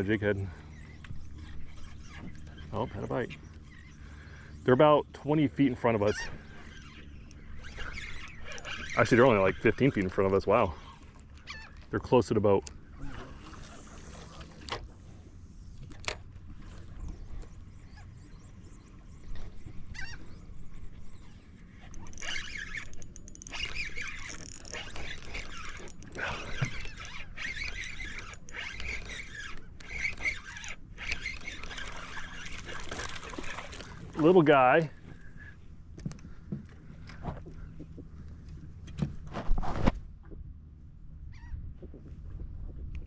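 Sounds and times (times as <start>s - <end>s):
gulls calling: 0.0s - 12.0s, 17.0s - 35.6s
low rumble of wind and water: 0.0s - 43.0s
sharp clicks: 7.2s - 9.3s, 21.8s - 34.2s.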